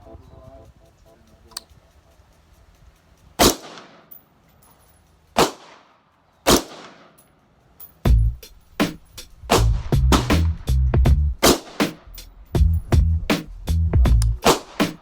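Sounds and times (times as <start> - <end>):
gunshots with echo: 3.4 - 4.1, 5.4 - 7.2, 11.4 - 12.1, 14.4 - 15.0.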